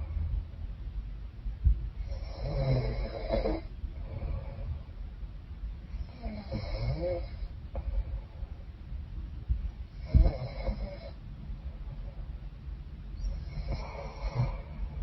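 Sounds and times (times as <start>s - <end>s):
woman snoring: 2.1s - 3.7s, 6.0s - 7.5s, 10.0s - 11.2s, 13.4s - 15.0s.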